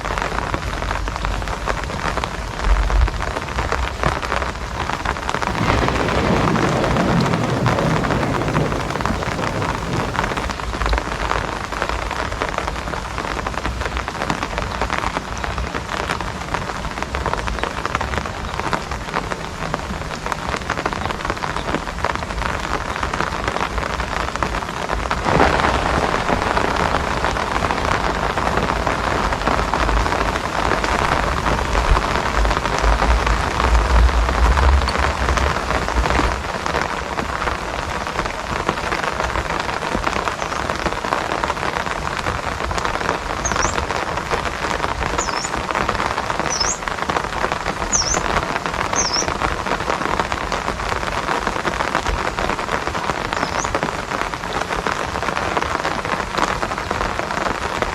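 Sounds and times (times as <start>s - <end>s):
rain pattering: 0.0s - 57.9s
low rumble: 5.4s - 10.5s.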